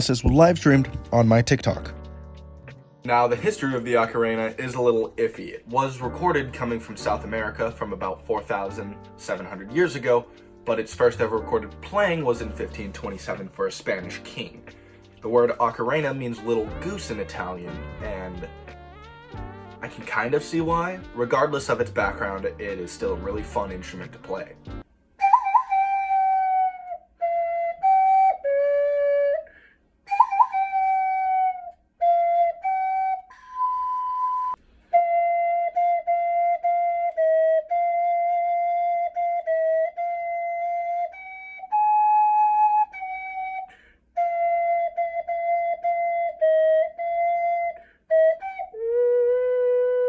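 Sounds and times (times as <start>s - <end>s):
ocarina playing slow melody: 25.2s - 29.4s, 30.1s - 50.0s.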